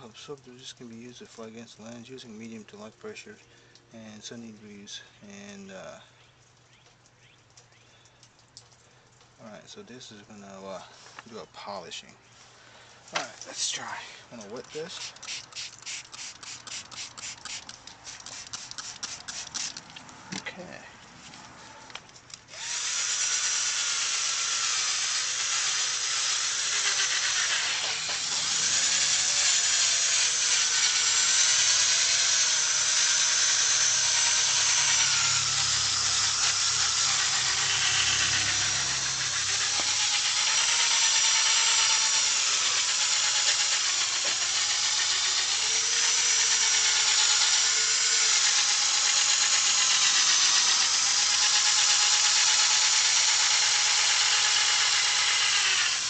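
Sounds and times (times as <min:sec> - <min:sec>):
sanding disc on plastic: 0:14.5 - 0:19.9, 0:26.1 - 0:52.4
electric drill motor whine: 0:22.5 - 0:56.0.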